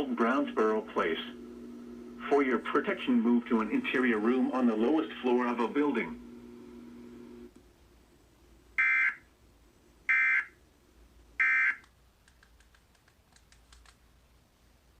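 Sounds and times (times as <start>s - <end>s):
faint clicks: 11.8s - 14.0s.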